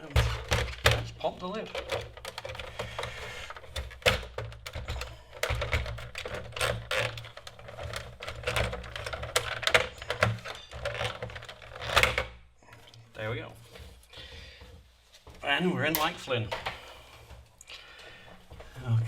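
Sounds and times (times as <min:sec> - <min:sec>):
plastic case clicks and knocks: 0:00.0 - 0:12.4.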